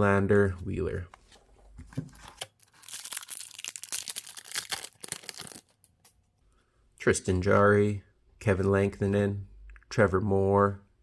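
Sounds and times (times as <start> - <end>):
wrapper tearing and crinkling: 2.3 - 5.9.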